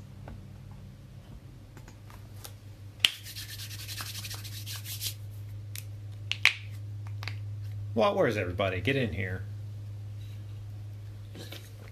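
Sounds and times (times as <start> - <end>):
steady low hum: 0.0 - 11.9
rubbing across a surface: 3.1 - 5.2.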